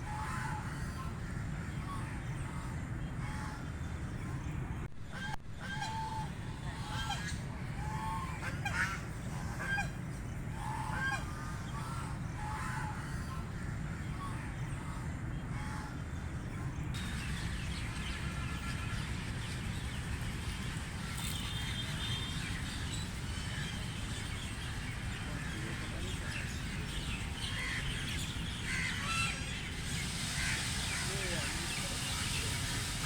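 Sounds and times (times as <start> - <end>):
ducks quacking: 5.1 - 16.0, 17.1 - 33.0.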